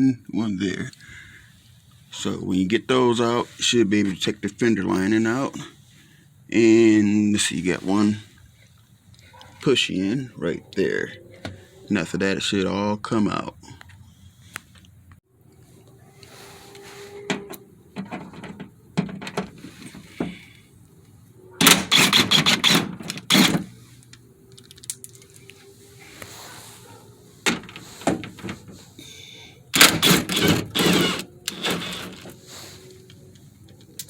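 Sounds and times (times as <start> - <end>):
hand tools clicking and knocking: 16.7 - 20.4, 21.6 - 25.6, 27.4 - 28.8, 29.7 - 32.4.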